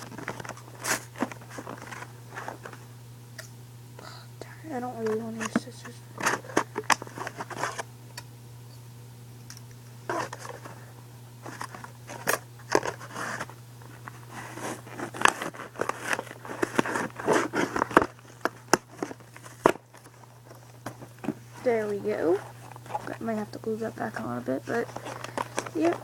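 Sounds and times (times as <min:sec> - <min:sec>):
plastic packaging crinkling: 0:00.0 - 0:02.8, 0:11.4 - 0:26.0.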